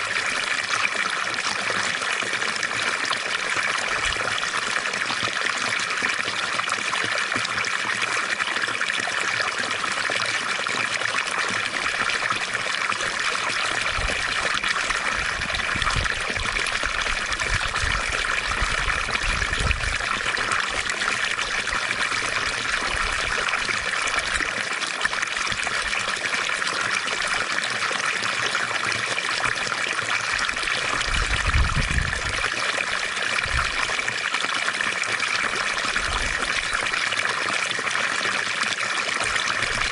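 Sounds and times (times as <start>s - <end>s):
water fountain splashing: 0.0s - 39.9s
low rumble of falling water: 29.0s - 34.2s, 39.2s - 39.9s.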